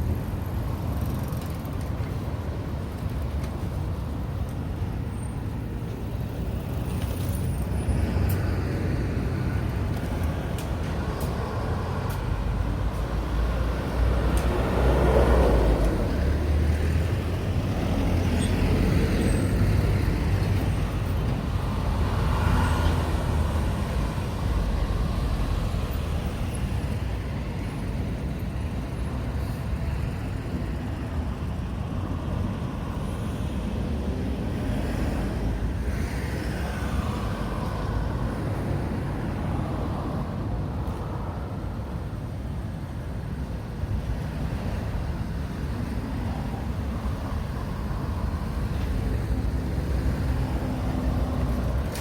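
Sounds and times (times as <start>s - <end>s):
motor vehicles passing: 6.2s - 28.0s.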